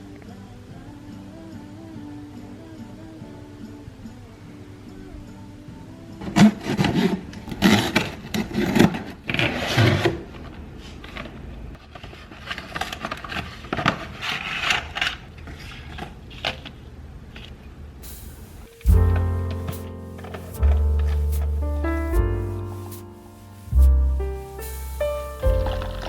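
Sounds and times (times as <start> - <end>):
hands rubbing and scraping: 18.2 - 26.0.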